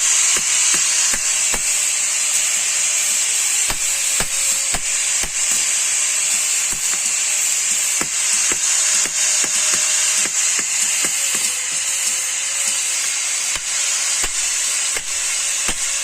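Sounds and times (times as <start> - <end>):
steady high hiss: 0.0 - 16.0
hammer striking steel: 0.4 - 1.9, 3.6 - 5.8, 6.5 - 11.6, 13.5 - 16.0.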